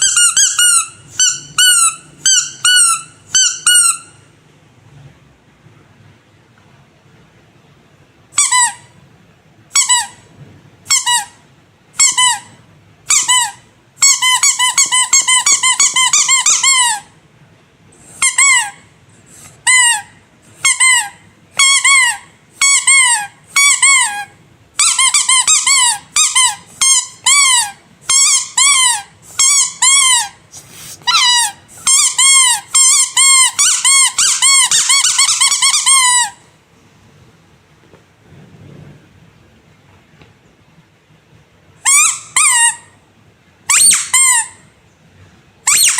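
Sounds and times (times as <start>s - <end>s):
squeaky rubber toys squeaking: 0.0s - 4.3s, 8.3s - 9.0s, 9.7s - 17.2s, 18.1s - 36.5s, 41.8s - 43.0s, 43.7s - 44.7s, 45.7s - 45.9s.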